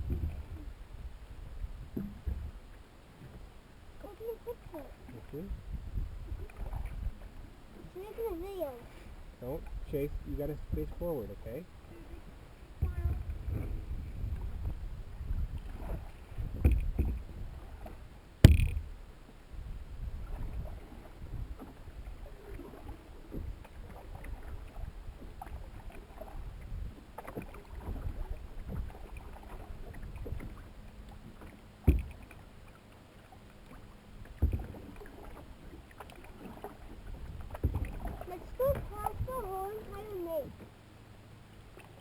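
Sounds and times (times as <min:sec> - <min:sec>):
paddling water noise: 0:00.0 - 0:42.0
knocks against canoe: 0:16.6 - 0:17.2, 0:18.4 - 0:19.0, 0:31.8 - 0:32.3, 0:34.4 - 0:34.8.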